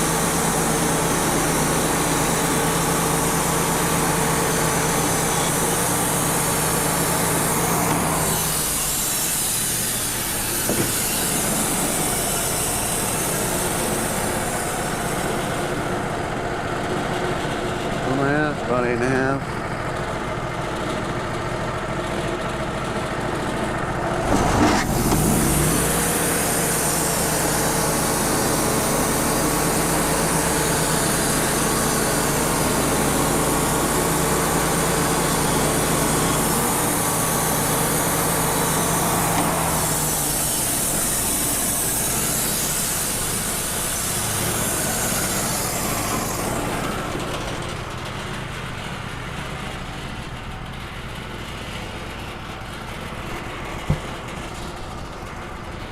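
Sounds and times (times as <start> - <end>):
band saw blade cutting log: 0.0 - 15.8, 24.2 - 47.5
sawmill engine running: 0.0 - 55.9.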